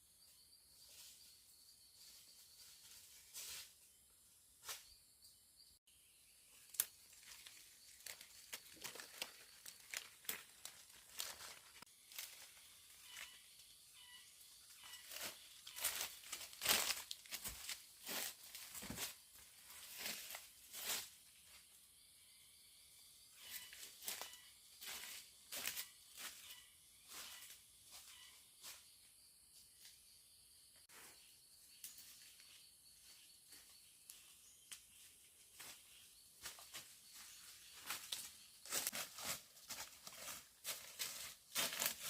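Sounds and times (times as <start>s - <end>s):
leaves and stems rustling and snapping: 6.7s - 13.3s, 15.1s - 19.0s.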